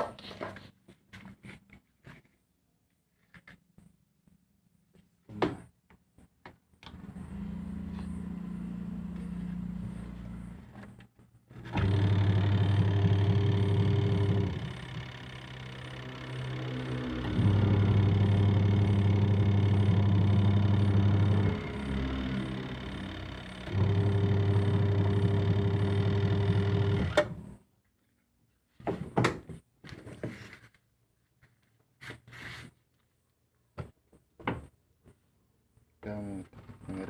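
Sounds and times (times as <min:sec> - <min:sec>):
washing machine motor humming: 0:06.9 - 0:10.7, 0:11.6 - 0:27.6.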